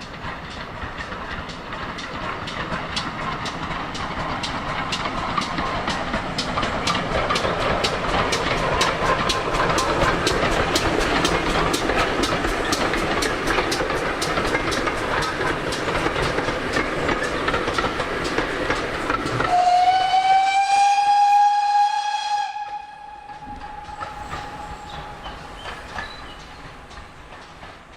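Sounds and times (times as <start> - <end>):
wheels clicking over rail joints: 0.0 - 20.0, 23.2 - 27.9
steam train running: 0.0 - 27.9
steam whistle: 19.4 - 24.8.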